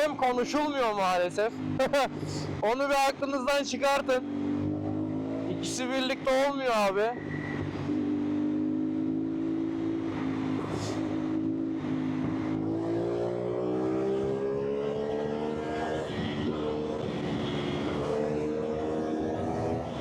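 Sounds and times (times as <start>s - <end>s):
motorcycle engine accelerating: 4.1s - 6.0s, 7.2s - 20.0s.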